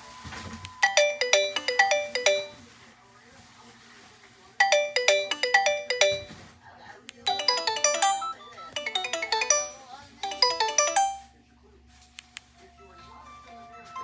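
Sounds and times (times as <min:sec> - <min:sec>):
phone ringtone melody: 0:00.8 - 0:02.6, 0:04.6 - 0:06.4, 0:07.3 - 0:11.3.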